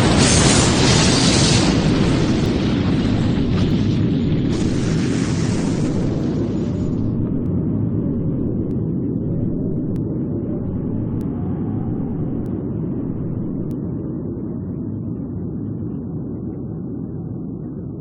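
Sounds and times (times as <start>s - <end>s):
deep explosion rumble: 0.0s - 14.3s.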